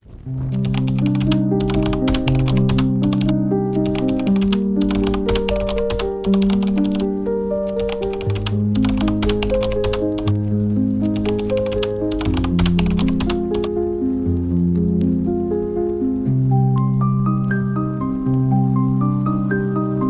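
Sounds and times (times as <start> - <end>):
campfire crackling and popping: 0.0 - 5.4
calm instrumental music: 0.3 - 20.0.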